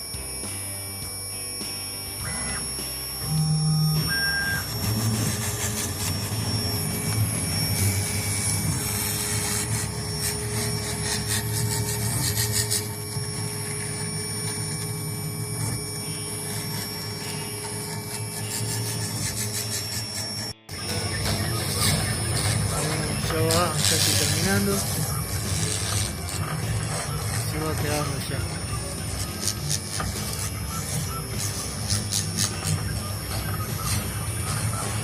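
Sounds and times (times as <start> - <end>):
router spindle whine: 0.0 - 35.0
bit rasping into wood: 2.2 - 35.0.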